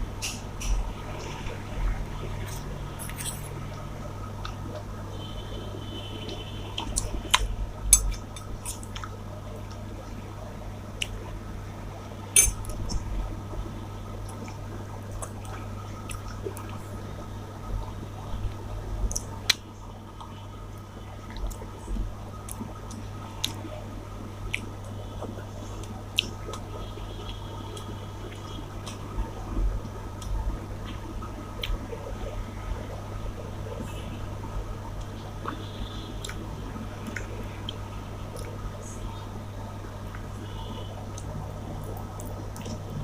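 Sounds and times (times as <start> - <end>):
steady low hum: 0.0 - 43.0
wet squelching and chewing: 6.8 - 9.9, 31.6 - 32.0, 41.1 - 43.0.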